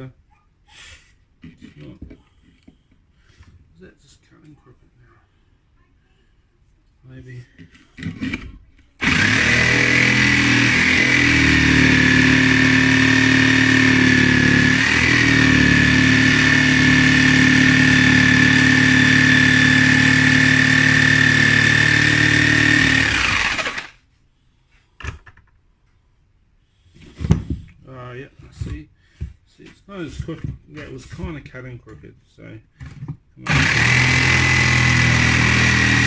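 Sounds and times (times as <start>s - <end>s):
power tool whining cutting wood: 9.0s - 24.0s, 33.5s - 36.0s.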